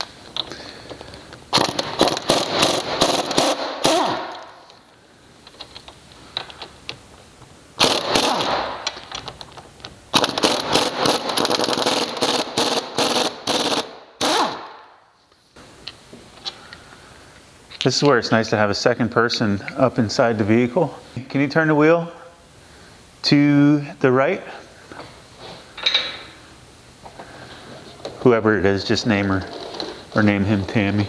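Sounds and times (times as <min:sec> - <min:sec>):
impact wrench rattling: 0:01.5 - 0:04.8, 0:07.8 - 0:14.7.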